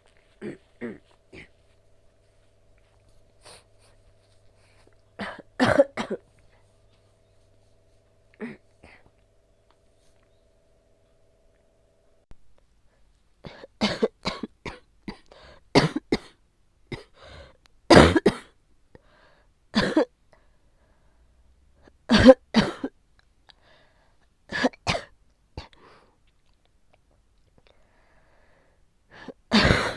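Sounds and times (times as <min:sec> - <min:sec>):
woman coughing: 0:00.4 - 0:01.6, 0:05.2 - 0:06.2, 0:08.3 - 0:09.1, 0:13.5 - 0:17.2, 0:17.9 - 0:18.5, 0:19.8 - 0:20.1, 0:22.1 - 0:22.9, 0:24.5 - 0:25.7, 0:29.2 - 0:29.9.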